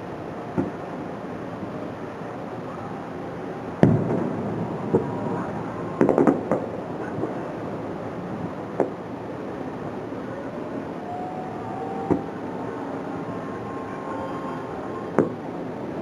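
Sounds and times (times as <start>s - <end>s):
background noise: 0.0s - 16.0s
fireworks crackling: 0.0s - 16.0s
fireworks booming: 0.5s - 1.0s, 3.8s - 9.4s, 12.0s - 12.6s, 14.7s - 15.6s.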